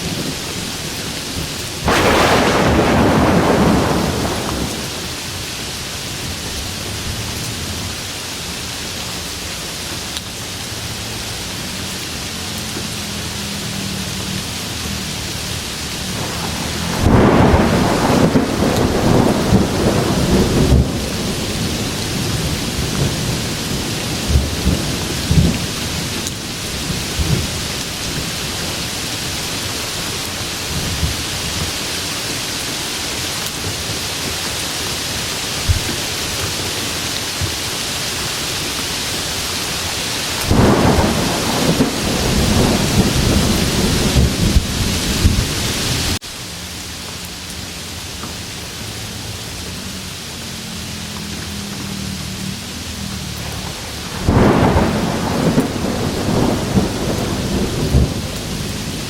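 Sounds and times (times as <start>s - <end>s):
heavy rain: 0.0s - 59.0s
thunder rumbling: 1.8s - 5.6s, 15.9s - 28.9s, 40.3s - 46.2s, 51.6s - 59.0s.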